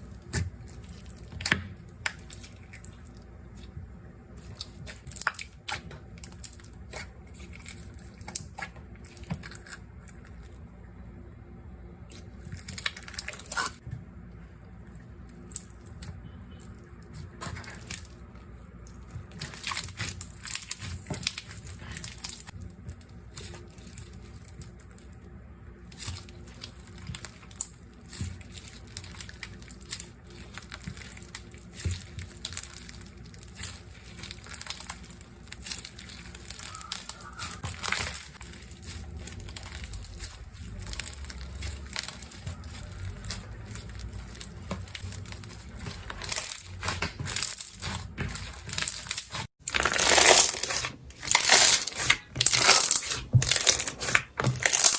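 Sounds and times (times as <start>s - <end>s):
slime crackling and popping: 18.9s - 54.9s.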